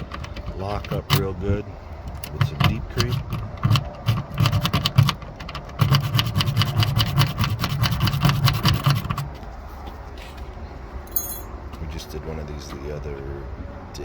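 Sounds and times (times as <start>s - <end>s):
car door lock rattling and clicking: 0.0s - 1.3s, 2.0s - 6.8s.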